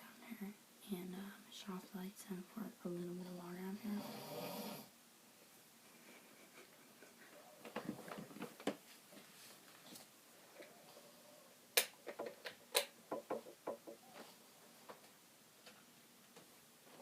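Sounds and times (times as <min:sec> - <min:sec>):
quiet clicks and taps: 0:11.8 - 0:17.0.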